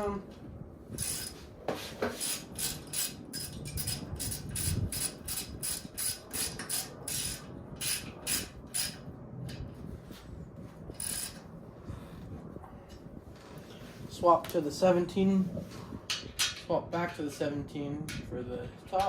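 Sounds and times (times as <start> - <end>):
ratchet wrench clicking: 1.0 - 1.4, 2.2 - 9.0, 11.0 - 11.4.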